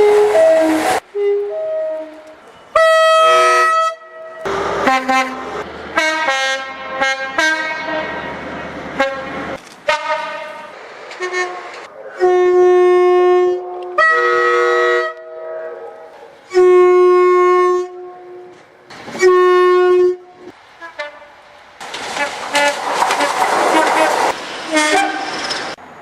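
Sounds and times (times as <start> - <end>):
train horn blasts: 0.0 - 8.4, 9.0 - 21.4, 22.2 - 25.3
loud rushing noise: 21.7 - 25.8.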